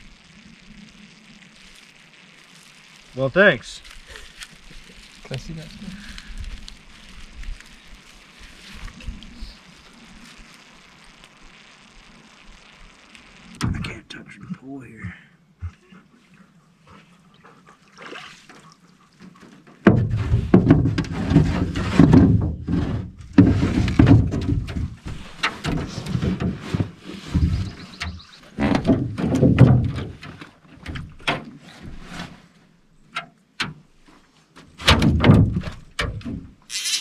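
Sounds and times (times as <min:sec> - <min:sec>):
heavy thuds and knocks: 0:19.8 - 0:27.7, 0:34.8 - 0:36.6.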